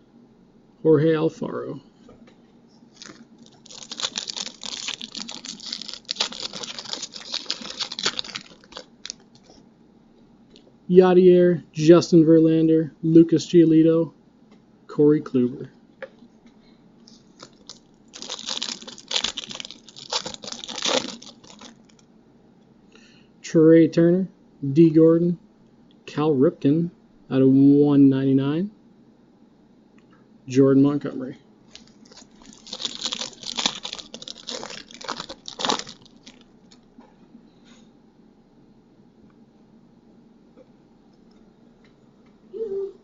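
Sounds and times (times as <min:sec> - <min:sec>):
foil wrapper crinkling and tearing: 0:02.9 - 0:09.6, 0:17.2 - 0:22.0, 0:31.7 - 0:36.9.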